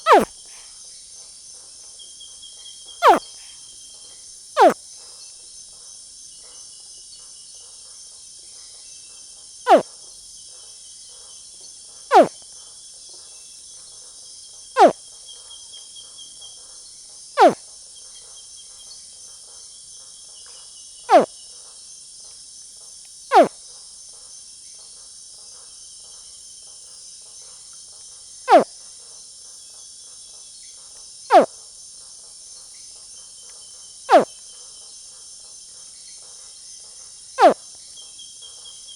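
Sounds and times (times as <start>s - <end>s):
caiman screaming: 0.0s - 0.3s
night insects chorus: 37.4s - 38.0s.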